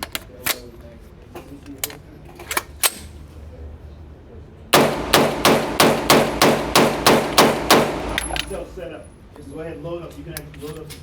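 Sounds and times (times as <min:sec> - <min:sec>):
gunshots: 0:04.8 - 0:08.6.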